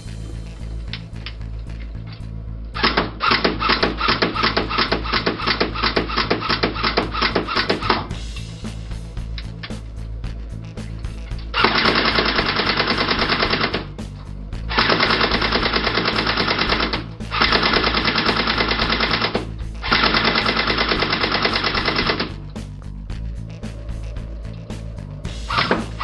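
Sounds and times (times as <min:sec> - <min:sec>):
airsoft rifle firing bursts: 0:02.8 - 0:08.1, 0:11.6 - 0:14.0, 0:14.7 - 0:22.4.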